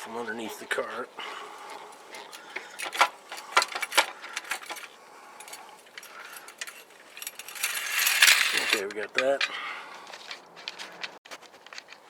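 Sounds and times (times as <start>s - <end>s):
scissor jack clinking and rattling: 1.7s - 9.0s.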